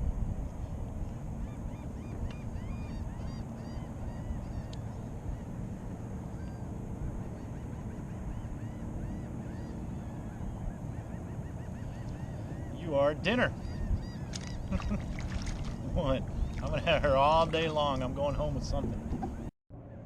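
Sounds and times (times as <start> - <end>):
steady low rumble: 0.0 - 20.0
flock of birds calling: 7.2 - 17.4.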